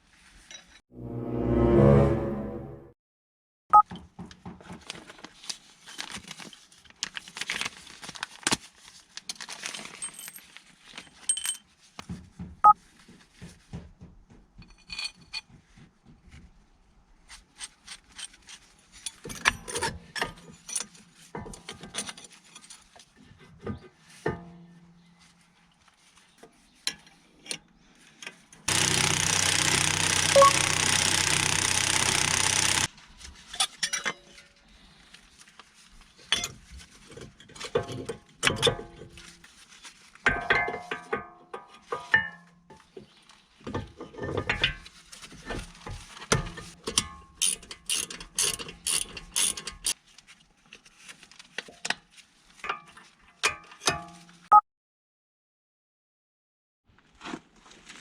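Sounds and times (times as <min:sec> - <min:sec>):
metal tools clinking: 0:09.8 - 0:11.7, 0:14.6 - 0:15.5
loud steady rattling noise: 0:28.7 - 0:32.9.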